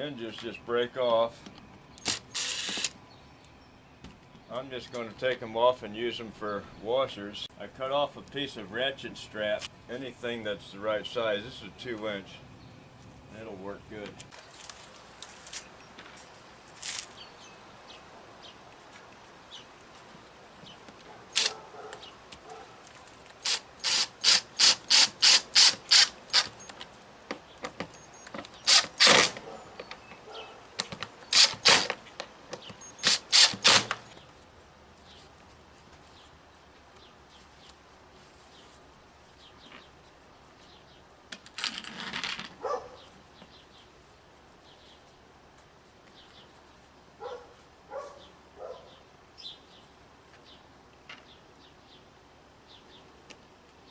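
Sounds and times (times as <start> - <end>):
hand tool clicking on screws: 2.0 - 2.9, 23.4 - 26.8, 28.7 - 29.4, 30.8 - 32.0, 32.6 - 34.0.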